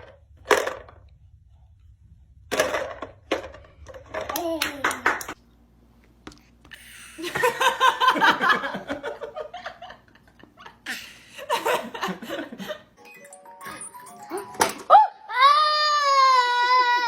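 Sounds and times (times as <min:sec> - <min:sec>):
people laughing: 0:07.2 - 0:12.9.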